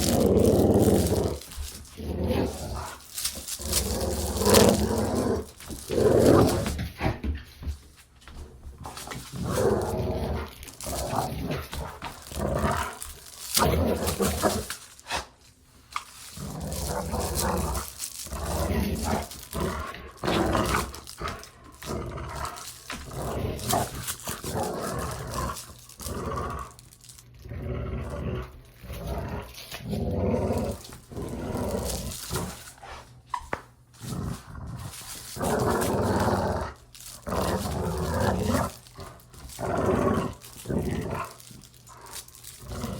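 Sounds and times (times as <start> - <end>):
dog growling in play: 0.0 - 7.4, 8.8 - 15.3, 16.2 - 42.9.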